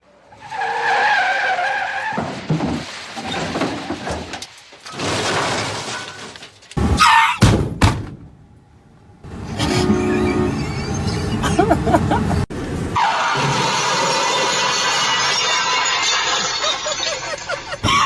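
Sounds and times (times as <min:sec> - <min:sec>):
car skidding: 0:00.0 - 0:07.6, 0:09.4 - 0:18.0
tyre screech: 0:00.3 - 0:07.5, 0:09.4 - 0:11.7
car crash impacts: 0:01.4 - 0:08.6.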